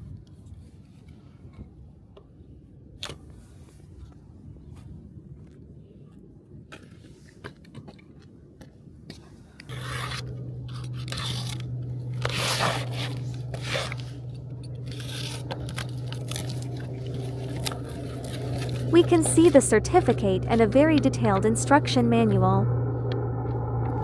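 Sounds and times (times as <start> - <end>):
steady low hum: 8.9 - 24.0
packaging crinkling and scraping: 9.7 - 21.1.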